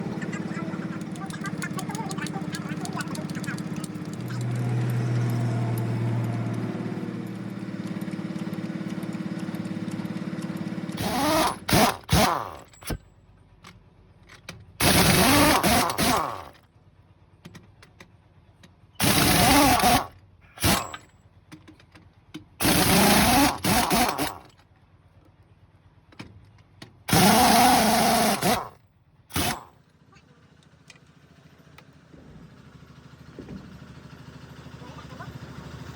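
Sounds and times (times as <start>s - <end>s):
machine running with fast pulse: 0.0s - 12.7s, 14.8s - 16.6s, 19.0s - 20.9s, 22.6s - 24.4s, 27.1s - 29.7s.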